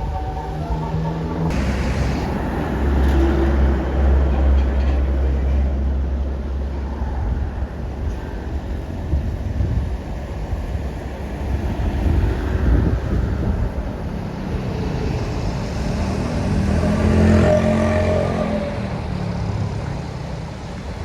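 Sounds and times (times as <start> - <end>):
deep bus engine rumble: 0.0 - 21.0
road noise: 0.0 - 21.0
multi-tone bus horn: 16.7 - 19.1.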